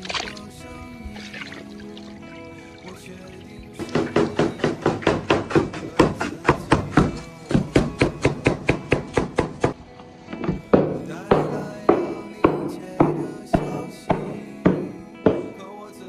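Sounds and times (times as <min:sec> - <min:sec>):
background music: 0:00.0 - 0:16.0
cleaver chopping on wooden board: 0:03.8 - 0:09.8, 0:10.4 - 0:15.5.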